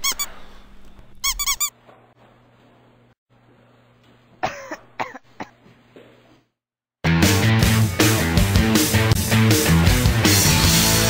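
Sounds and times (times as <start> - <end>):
person coughing: 4.4 - 5.6
guitar rock music: 7.0 - 11.0.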